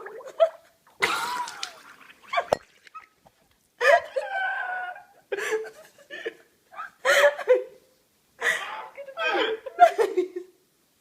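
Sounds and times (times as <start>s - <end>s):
person spluttering water: 1.0s - 3.2s.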